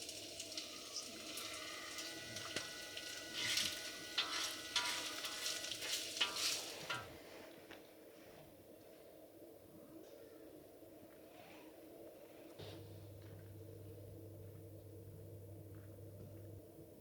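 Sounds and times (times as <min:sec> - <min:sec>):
food sizzling in a pan: 0:00.0 - 0:07.5
metal utensil scraping and clinking: 0:02.5 - 0:07.3.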